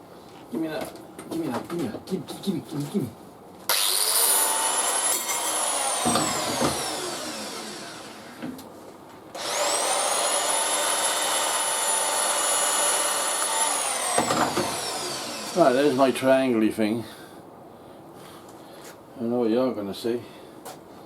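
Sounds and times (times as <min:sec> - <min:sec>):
electric power tool motor whining: 0:03.7 - 0:08.4, 0:09.4 - 0:16.3.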